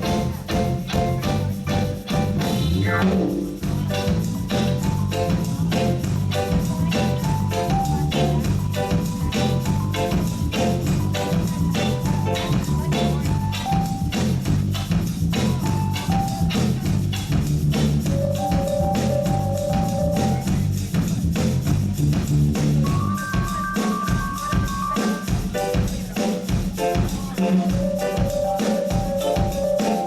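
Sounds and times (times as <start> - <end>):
heavy bass line: 0.0 - 23.2
drum kit beat: 0.0 - 30.0
reggae band playing: 0.0 - 30.0.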